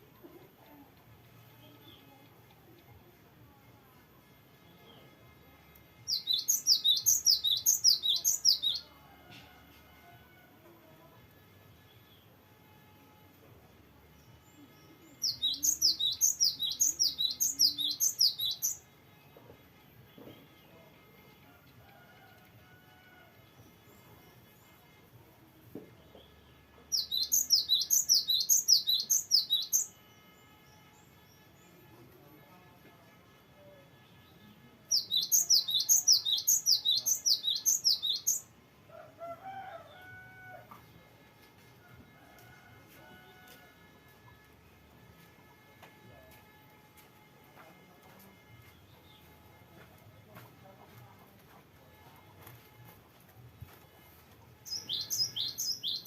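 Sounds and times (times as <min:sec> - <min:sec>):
bird singing rolling phrase: 0:06.1 - 0:08.8, 0:15.2 - 0:18.8, 0:26.9 - 0:29.9, 0:34.9 - 0:38.4, 0:54.7 - 0:56.0.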